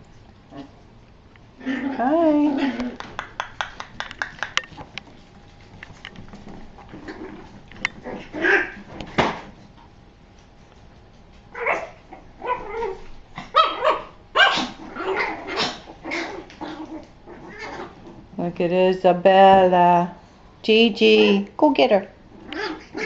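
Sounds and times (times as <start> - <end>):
puppies barking: 11.6 - 18.0.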